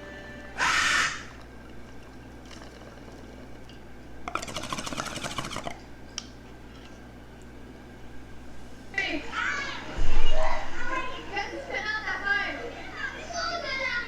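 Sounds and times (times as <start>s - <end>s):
water bubbling through a bong: 1.4s - 5.9s.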